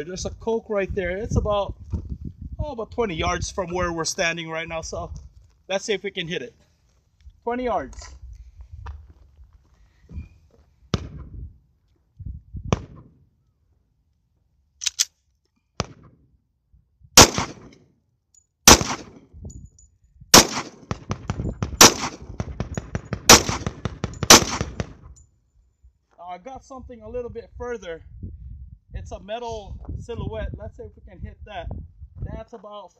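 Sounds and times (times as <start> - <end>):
pistol shots: 17.2 - 17.8, 18.7 - 19.2, 20.3 - 25.0.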